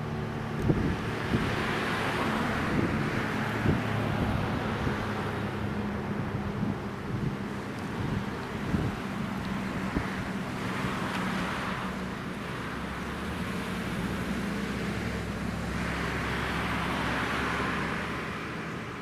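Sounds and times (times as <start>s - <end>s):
low engine hum: 0.0s - 19.0s
vehicles passing: 0.0s - 19.0s.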